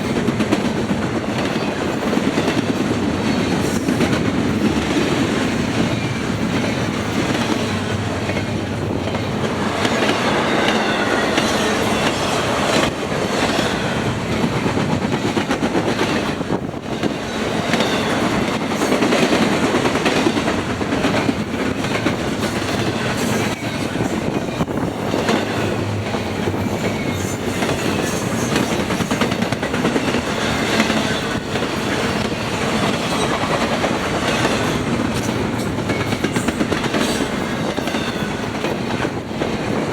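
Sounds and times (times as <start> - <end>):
train wheels clickety-clack: 0.0 - 39.9.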